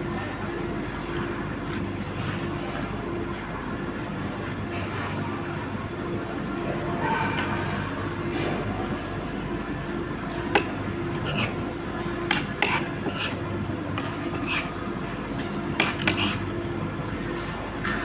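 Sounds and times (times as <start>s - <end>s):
low background hum: 0.0s - 18.0s
cutlery clinking against dishes: 6.9s - 8.6s.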